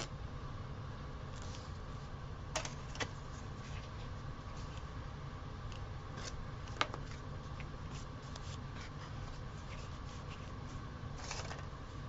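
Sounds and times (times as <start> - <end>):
steady low hum: 0.0 - 12.0
paper rustling: 11.2 - 11.7.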